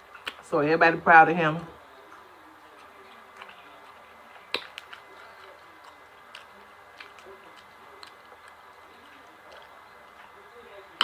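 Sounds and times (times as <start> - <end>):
wet clicks and smacks: 0.1 - 0.4, 4.3 - 5.1
person chewing fried chicken: 2.1 - 10.4.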